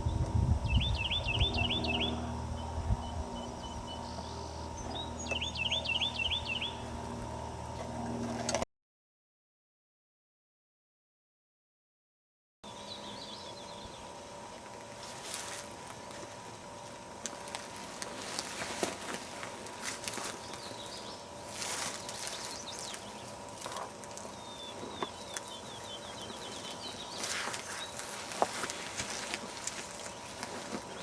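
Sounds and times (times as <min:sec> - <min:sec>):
bird chirping: 0:00.0 - 0:06.9, 0:12.7 - 0:14.1, 0:20.1 - 0:28.8
faint steady hum: 0:00.0 - 0:08.6, 0:12.7 - 0:31.0
handling clicks and rustles: 0:17.2 - 0:31.0.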